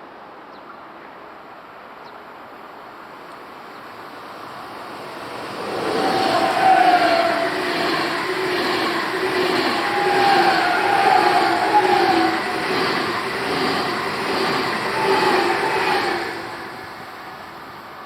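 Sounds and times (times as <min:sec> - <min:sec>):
wheels clattering on rail joints: 0:04.7 - 0:16.6
train wheels squealing: 0:04.9 - 0:18.0.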